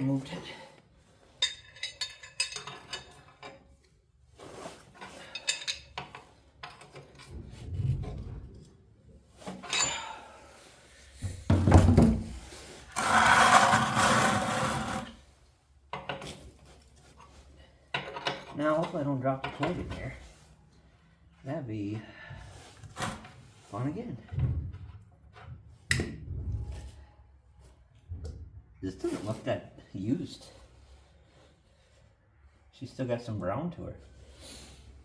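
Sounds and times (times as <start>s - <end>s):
metal wrench clinks and scrapes: 1.2s - 3.9s, 4.6s - 7.5s, 9.4s - 10.3s, 16.0s - 20.4s.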